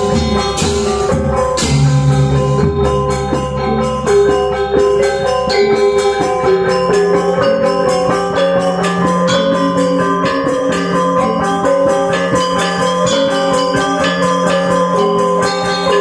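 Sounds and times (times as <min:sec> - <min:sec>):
gamelan playing: 0:00.0 - 0:16.0.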